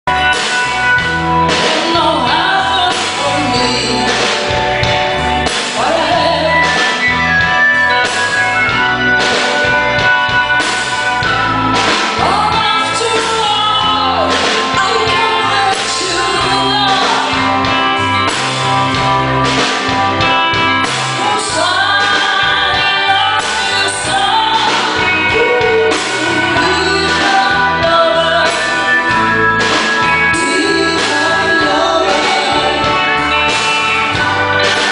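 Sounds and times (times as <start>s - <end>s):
bass: 0.0s - 34.9s
guitar: 0.0s - 34.9s
person singing: 1.5s - 4.6s, 5.4s - 7.1s, 12.0s - 18.0s, 21.1s - 33.4s.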